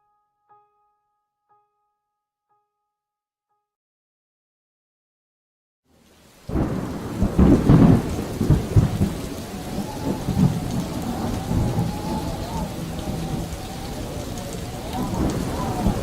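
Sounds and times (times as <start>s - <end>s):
rain: 5.9s - 16.0s
thunder rumbling: 6.5s - 16.0s.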